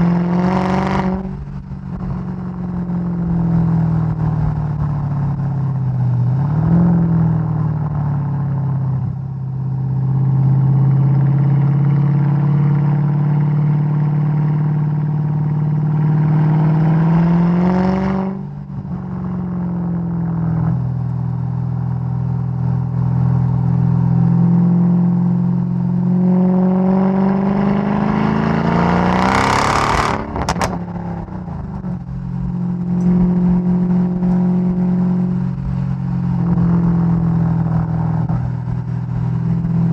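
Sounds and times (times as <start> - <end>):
car engine revving: 0.0 - 39.9
exhaust popping and banging: 30.1 - 32.2.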